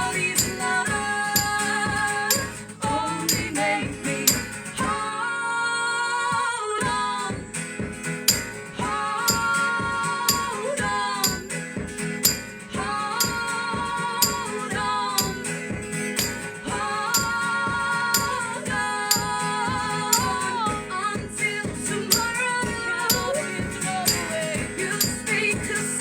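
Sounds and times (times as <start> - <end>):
tambourine jingles: 0.0 - 3.6, 4.3 - 4.7, 8.3 - 8.6, 9.3 - 9.7, 10.3 - 10.6, 11.2 - 11.6, 12.2 - 15.6, 16.2 - 20.6, 22.1 - 26.0
held sung notes: 12.2 - 15.6, 16.2 - 20.6.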